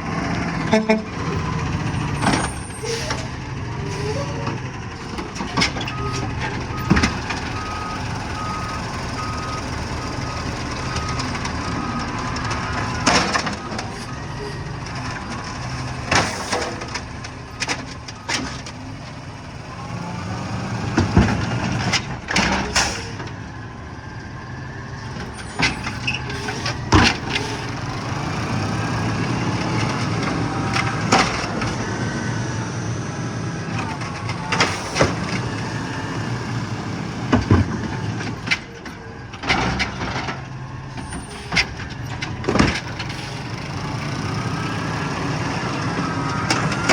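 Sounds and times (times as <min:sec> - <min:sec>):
garbage truck engine running: 0:00.0 - 0:46.9
hydraulics whining: 0:00.0 - 0:46.9
trash bins banging and clattering: 0:12.4 - 0:19.2, 0:19.9 - 0:23.4, 0:25.1 - 0:31.8, 0:33.8 - 0:46.9.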